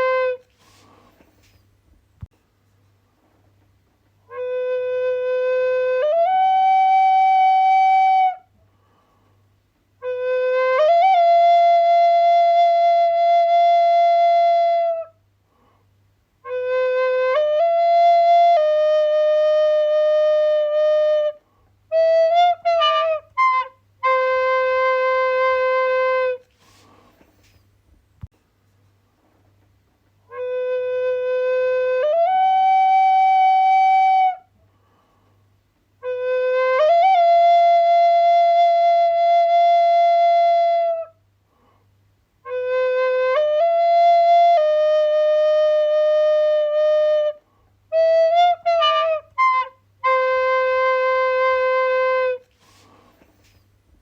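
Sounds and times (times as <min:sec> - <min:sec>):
flute playing long notes: 0:00.0 - 0:01.0, 0:04.3 - 0:08.5, 0:10.0 - 0:15.2, 0:16.4 - 0:26.9, 0:30.3 - 0:34.5, 0:36.0 - 0:41.2, 0:42.4 - 0:53.0.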